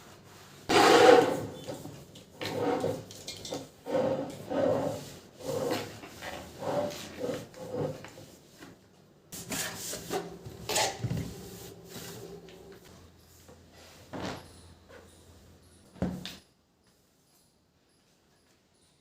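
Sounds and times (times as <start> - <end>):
rubbing strokes on surface: 3.9 - 8.6, 9.4 - 10.5, 11.2 - 12.6.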